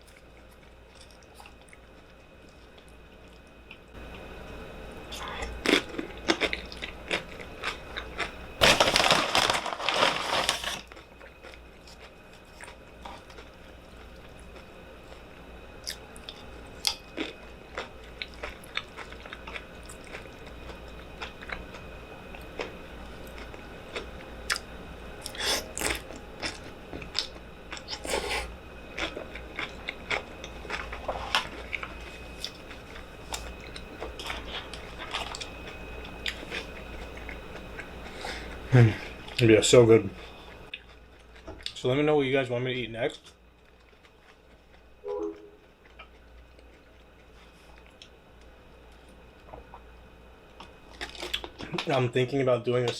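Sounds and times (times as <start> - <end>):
quiet chewing: 10.9 - 28.4, 29.0 - 38.6, 40.2 - 41.8.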